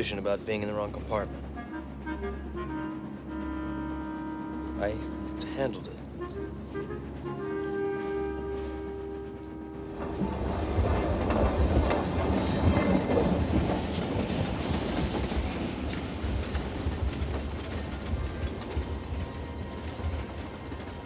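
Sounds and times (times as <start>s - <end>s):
train wheels clattering on rails: 4.2s - 21.0s.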